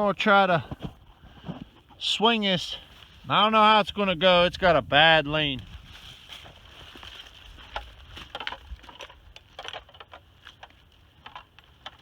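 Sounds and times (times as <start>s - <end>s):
dry leaves crunching underfoot: 5.3s - 11.8s.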